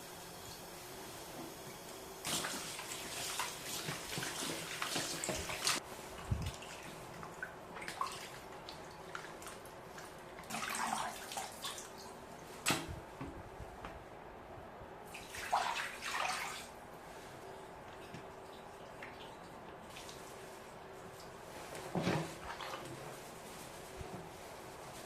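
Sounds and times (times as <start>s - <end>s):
tap water splashing in a sink: 2.2s - 5.8s, 6.4s - 12.0s.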